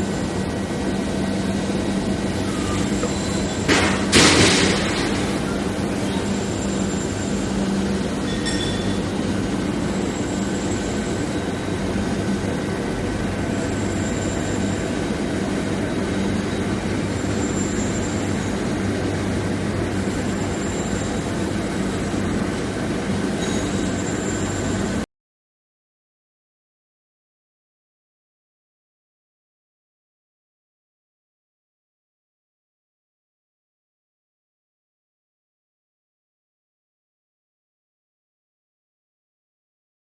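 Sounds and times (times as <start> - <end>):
industrial machinery din: 0.0 - 25.0.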